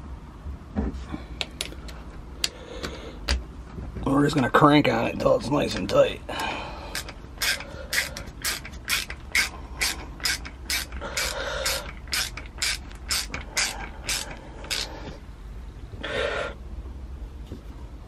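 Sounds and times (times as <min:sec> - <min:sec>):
rapid metallic ratchet clicks: 0:06.9 - 0:14.9.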